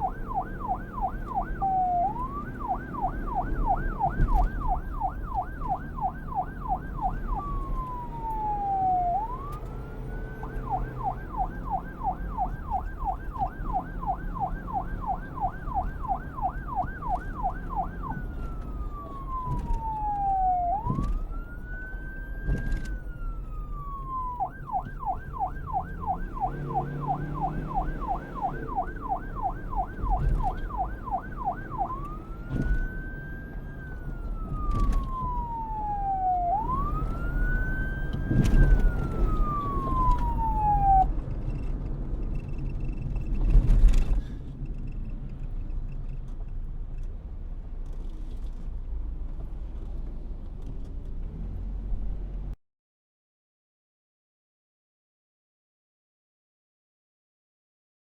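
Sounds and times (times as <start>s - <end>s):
police car siren: 0.0s - 43.0s.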